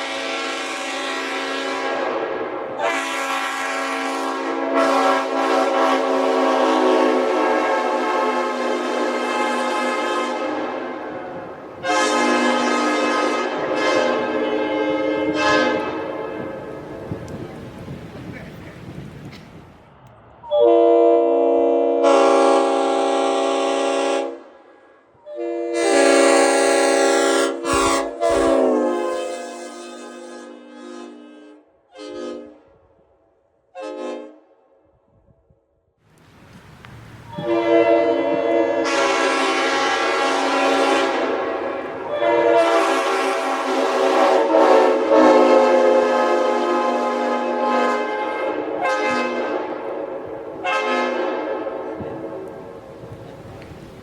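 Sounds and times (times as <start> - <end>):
train horn blasts: 0.0 - 17.4, 20.5 - 33.1, 33.7 - 34.9, 37.3 - 52.8.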